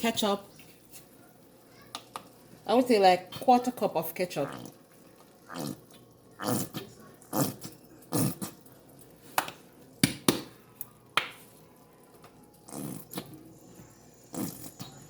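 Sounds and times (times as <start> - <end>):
squeeze bottle sputtering: 12.6 - 15.0.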